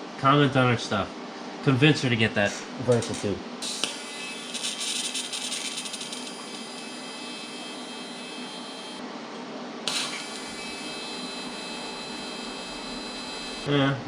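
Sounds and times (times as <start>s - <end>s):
welding arc buzzing and hissing: 3.0s - 9.0s, 9.9s - 13.7s.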